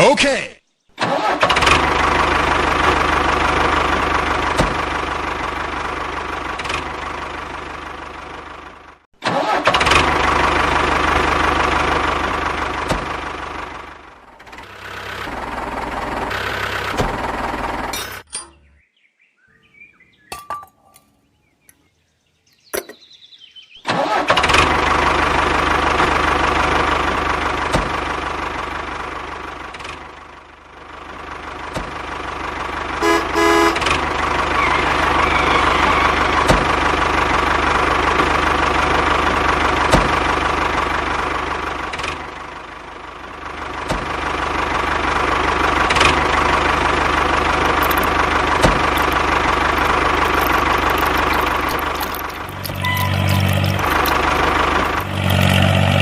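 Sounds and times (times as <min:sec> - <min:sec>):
short pitched beep: 0:52.8 - 0:53.3.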